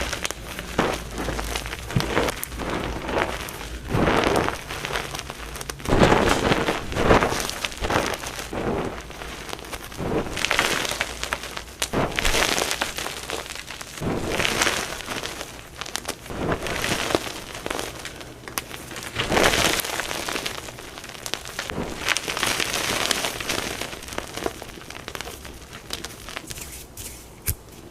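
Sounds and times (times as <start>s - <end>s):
chalk crunching by hand: 0.0s - 27.9s
chalk pieces snapping: 24.4s - 27.9s.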